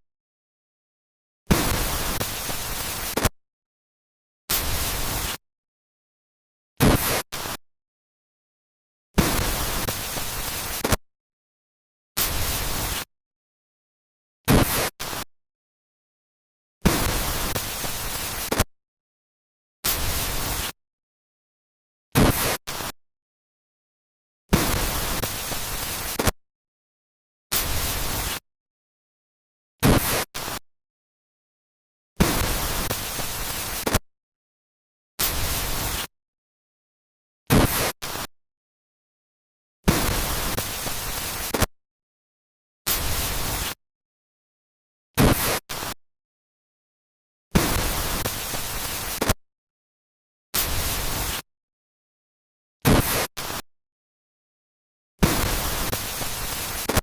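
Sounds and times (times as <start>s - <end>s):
static hiss bursts: 1.5s - 3.3s, 4.5s - 5.4s, 6.8s - 7.6s, 9.2s - 11.0s, 12.2s - 13.1s, 14.5s - 15.3s, 16.8s - 18.7s, 19.8s - 20.8s, 22.2s - 23.0s, 24.5s - 26.4s, 27.5s - 28.4s, 29.8s - 30.6s, 32.2s - 34.0s, 35.2s - 36.1s, 37.5s - 38.3s, 39.9s - 41.7s, 42.9s - 43.8s, 45.2s - 46.0s, 47.6s - 49.4s, 50.6s - 51.5s, 52.9s - 53.6s, 55.2s - 57.0s.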